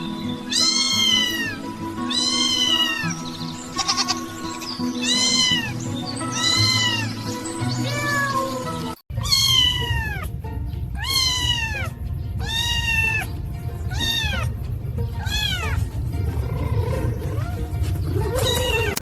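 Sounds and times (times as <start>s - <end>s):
background music: 0.0s - 19.0s
cat meowing: 0.5s - 3.1s, 3.8s - 4.2s, 5.0s - 5.8s, 6.4s - 7.2s, 7.8s - 13.3s, 13.9s - 14.6s, 15.2s - 15.8s, 16.4s - 19.0s.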